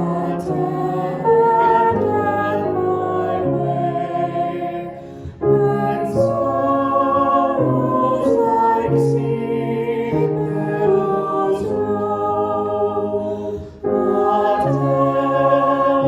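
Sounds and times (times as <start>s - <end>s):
voices singing a hymn: 0.0s - 16.0s.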